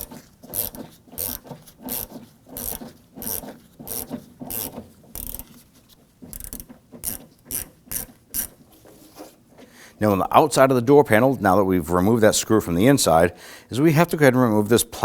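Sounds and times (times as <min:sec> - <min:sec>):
ratchet clicking: 0:00.0 - 0:05.5, 0:06.3 - 0:08.5.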